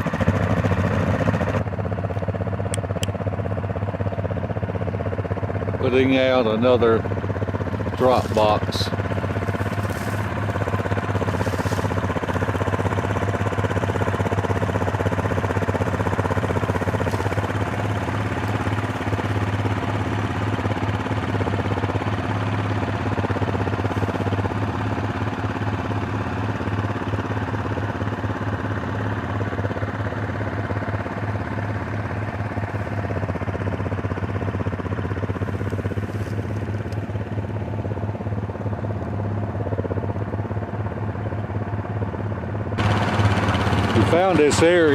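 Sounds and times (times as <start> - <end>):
atv engine running: 0.0 - 44.9.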